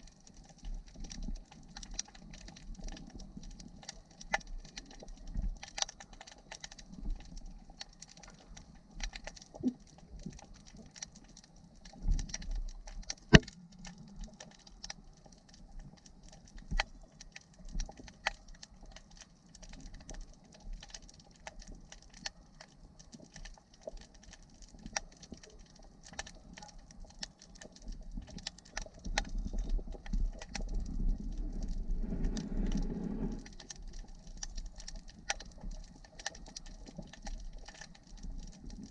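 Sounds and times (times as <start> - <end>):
underwater clicks and crackles: 0.0 - 38.9
faint hiss: 31.4 - 33.9.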